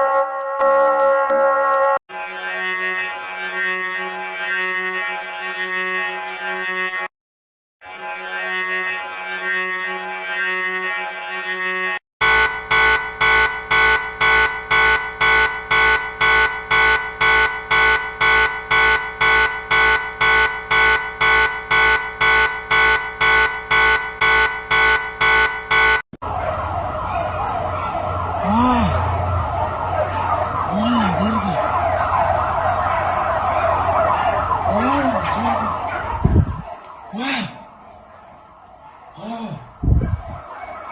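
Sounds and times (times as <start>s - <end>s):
wavering siren-like alarm: 0.0s - 2.0s, 12.2s - 40.9s
harsh multi-tone alarm beep: 12.2s - 26.1s.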